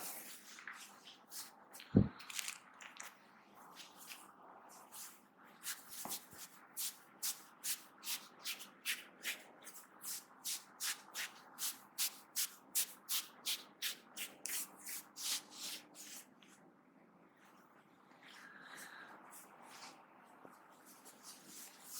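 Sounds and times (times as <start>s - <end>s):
hands rubbing hair and scalp: 10.9s - 16.3s.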